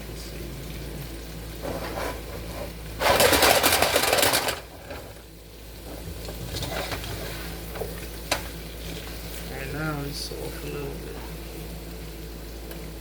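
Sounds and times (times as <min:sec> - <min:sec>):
food sizzling: 0:00.0 - 0:13.0
utensil scraping frying pan: 0:01.6 - 0:05.0, 0:05.9 - 0:08.0.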